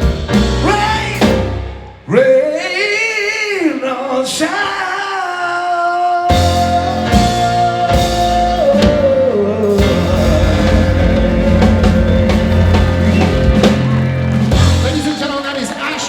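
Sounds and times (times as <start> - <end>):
drum and cymbal hits: 0.0 - 1.8, 6.3 - 16.0
live band playing: 0.0 - 2.1, 6.3 - 16.0.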